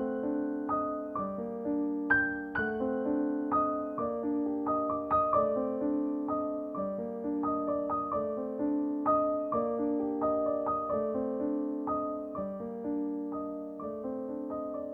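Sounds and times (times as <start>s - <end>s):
soft piano music: 0.0s - 14.9s.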